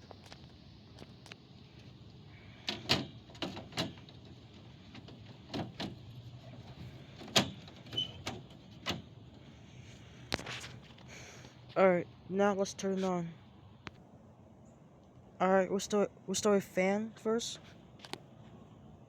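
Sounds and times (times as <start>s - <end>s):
knocks and clunks of handling: 2.6s - 9.4s.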